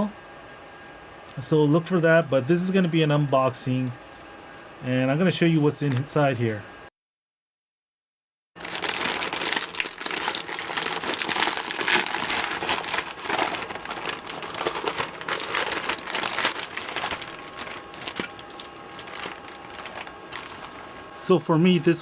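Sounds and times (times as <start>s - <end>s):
packaging crinkling and rustling: 8.6s - 21.1s.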